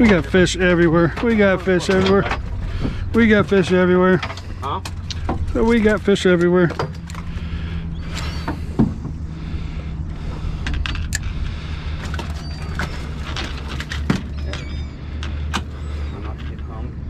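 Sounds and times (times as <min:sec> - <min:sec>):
boat engine idling: 0:00.0 - 0:17.0
faint high squeaks: 0:06.9 - 0:08.7, 0:12.1 - 0:16.9.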